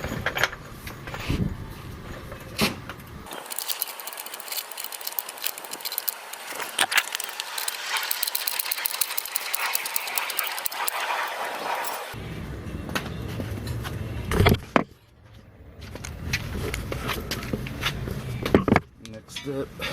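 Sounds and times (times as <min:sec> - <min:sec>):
car jack clicking and rattling: 0:03.3 - 0:12.1.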